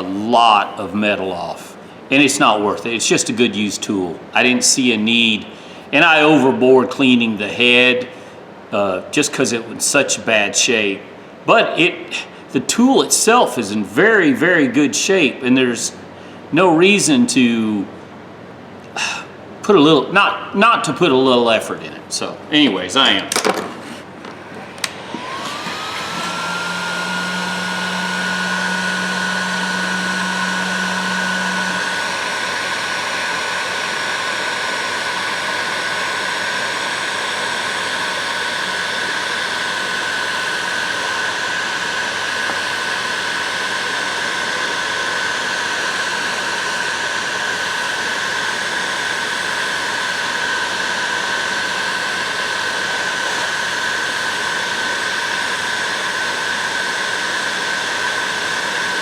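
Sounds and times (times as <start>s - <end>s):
heat gun fan whine: 0.0s - 59.0s.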